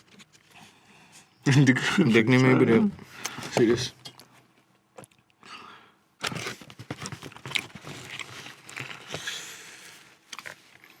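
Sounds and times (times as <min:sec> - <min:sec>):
paper wrapping crinkling: 0:06.2 - 0:11.0.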